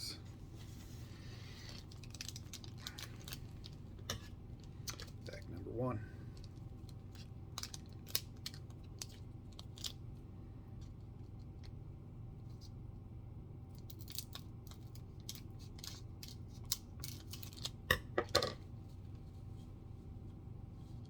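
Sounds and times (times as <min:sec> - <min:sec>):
foil wrapper crinkling and tearing: 0:01.6 - 0:03.8, 0:06.4 - 0:10.0, 0:13.8 - 0:17.8.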